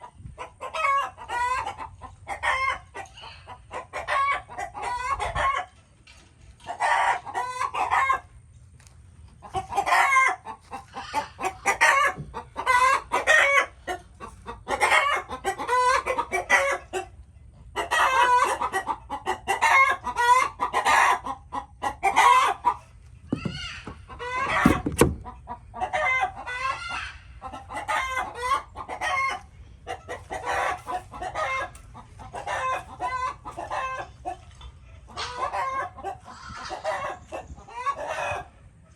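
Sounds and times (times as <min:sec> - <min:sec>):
chickens clucking: 0:00.0 - 0:38.9
sharp knock: 0:23.3 - 0:25.2.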